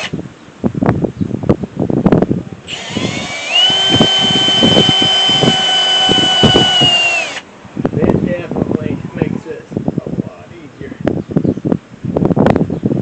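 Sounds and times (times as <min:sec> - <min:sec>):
power drill whining: 0:02.7 - 0:07.4.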